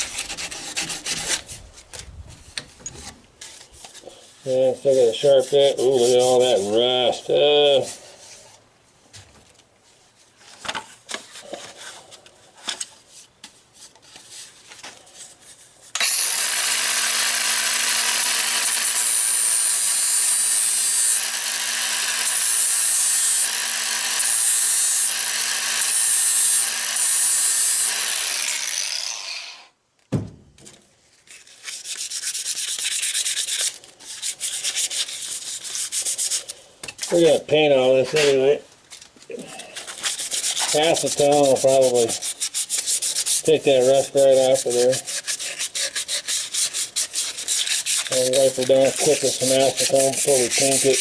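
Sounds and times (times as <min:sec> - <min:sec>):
sandpaper rubbing on wood: 0:00.0 - 0:01.6, 0:04.3 - 0:06.8, 0:31.5 - 0:36.5, 0:39.9 - 0:51.0.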